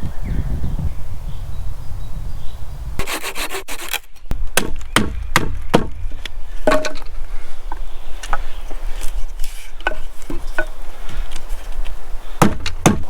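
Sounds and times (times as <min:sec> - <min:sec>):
hand saw cutting wood: 0:03.0 - 0:04.1.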